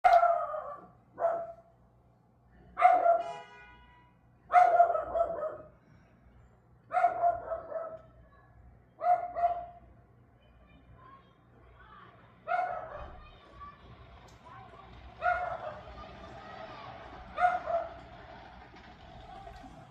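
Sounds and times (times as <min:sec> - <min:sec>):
dog barking: 0:00.1 - 0:01.7, 0:02.8 - 0:03.4, 0:04.5 - 0:05.8, 0:06.9 - 0:08.1, 0:09.0 - 0:09.9, 0:12.4 - 0:13.2, 0:15.2 - 0:15.9, 0:17.3 - 0:18.0.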